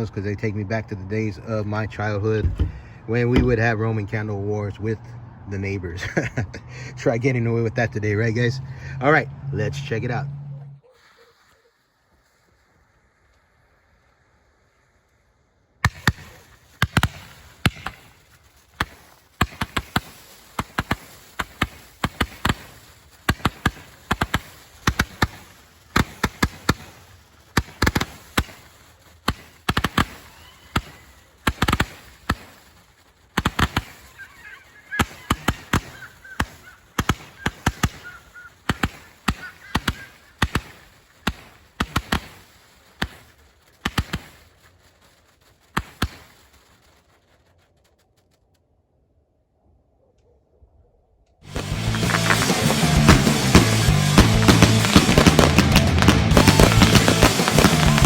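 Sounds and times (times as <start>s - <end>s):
roman candle fireworks popping: 0.0s - 4.4s, 10.8s - 48.5s, 51.4s - 58.0s.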